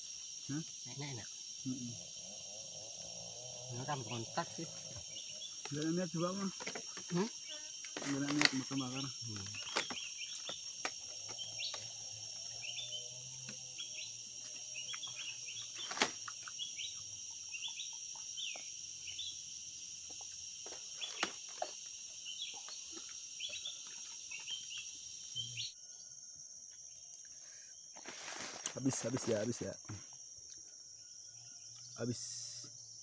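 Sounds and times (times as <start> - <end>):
high insect drone: 0.0 - 33.0
bird chirping: 3.6 - 19.6, 20.9 - 26.2.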